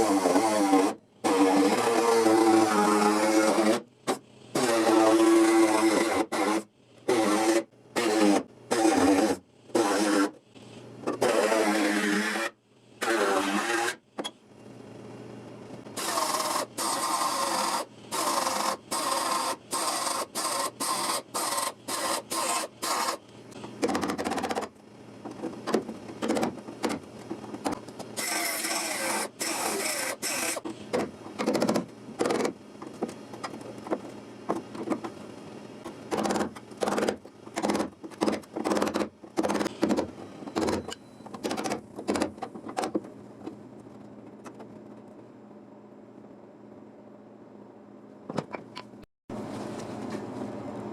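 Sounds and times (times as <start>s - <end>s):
whirring power tool: 16.0s - 23.2s, 28.2s - 30.7s.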